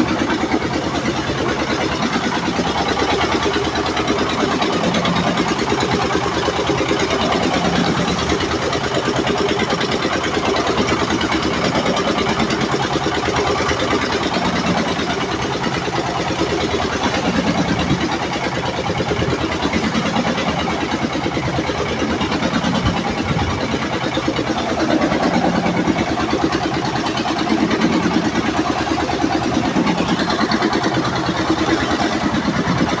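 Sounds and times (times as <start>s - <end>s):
strong wind: 22.0s - 24.0s.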